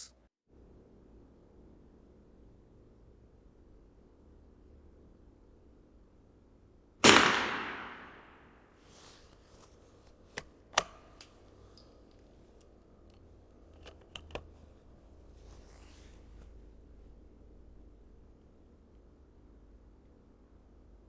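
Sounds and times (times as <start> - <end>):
rifle shot with echo: 7.0 - 8.6.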